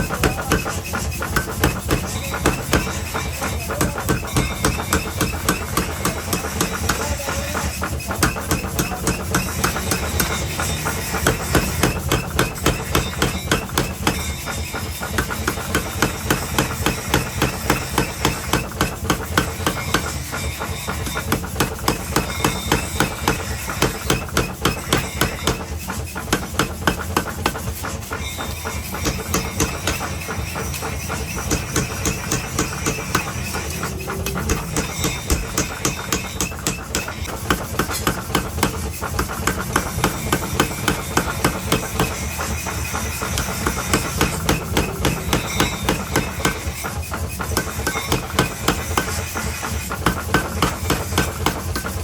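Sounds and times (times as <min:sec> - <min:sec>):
hammer blows on metal: 0:00.0 - 0:52.0
steady low hum: 0:26.6 - 0:52.0.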